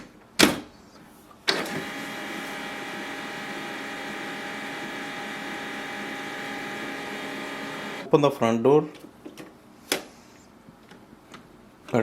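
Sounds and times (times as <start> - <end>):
printer whirring: 1.4 - 8.1.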